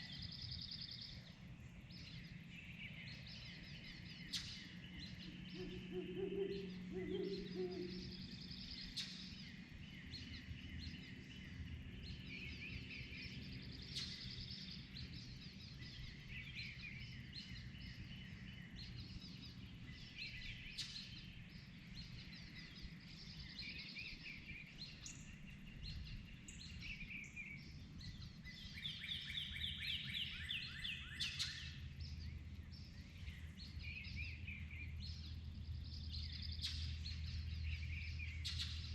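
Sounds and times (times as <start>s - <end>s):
low background rumble: 0.0s - 38.9s
songbirds singing: 0.0s - 38.9s.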